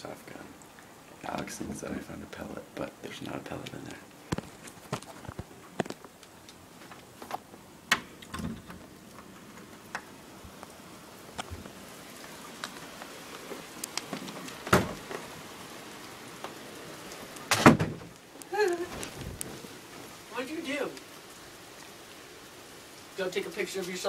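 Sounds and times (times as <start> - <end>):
light clicks and taps: 11.4 - 15.2.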